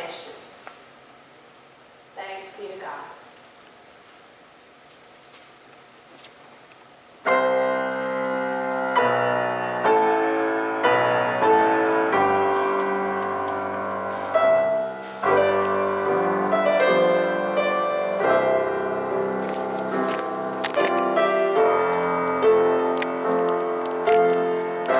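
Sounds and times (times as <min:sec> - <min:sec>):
piano playing slow chords: 0:07.2 - 0:24.9.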